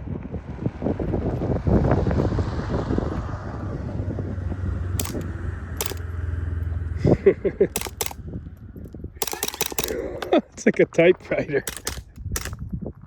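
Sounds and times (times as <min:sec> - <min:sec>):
low wind rumble: 0:00.0 - 0:13.0
suppressed pistol shots: 0:05.0 - 0:06.1, 0:07.7 - 0:08.2, 0:09.2 - 0:10.3, 0:11.6 - 0:12.6.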